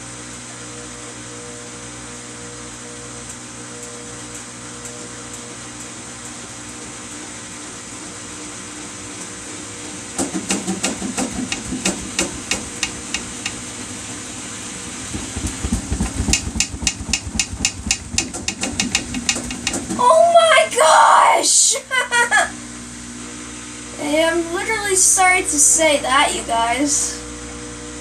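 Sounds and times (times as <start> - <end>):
washing machine humming: 0.0 - 28.0
washing machine knocking: 10.2 - 13.6, 15.0 - 20.1.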